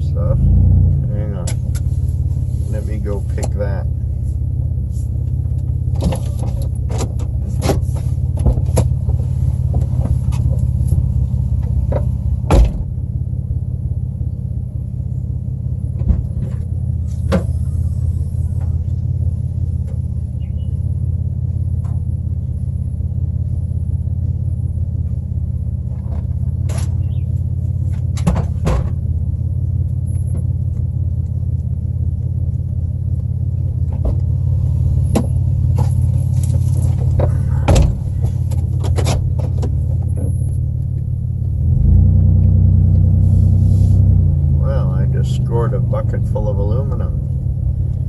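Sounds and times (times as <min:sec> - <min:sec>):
truck engine idling: 0:00.0 - 0:48.0
knocks and clanks: 0:28.0 - 0:29.1, 0:35.1 - 0:40.4.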